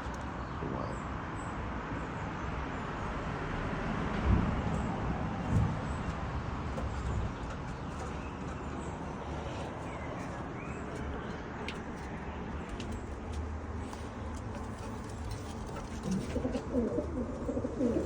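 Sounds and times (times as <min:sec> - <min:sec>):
pigeons cooing: 0:14.6 - 0:18.0.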